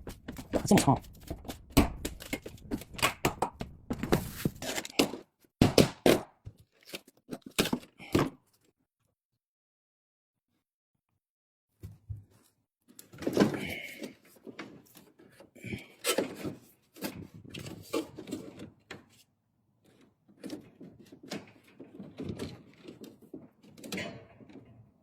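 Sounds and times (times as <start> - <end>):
knocks scrapes and rustles: 3.9 - 5.2.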